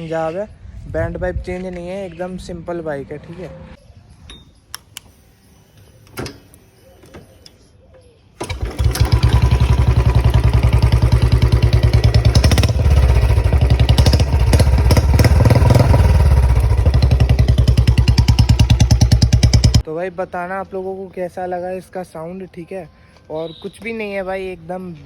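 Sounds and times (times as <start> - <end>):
motorcycle engine thumping: 8.5 - 19.8.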